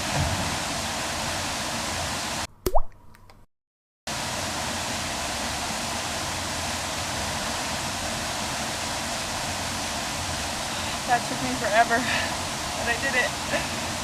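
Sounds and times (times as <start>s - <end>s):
waterfall rushing: 4.1s - 14.0s.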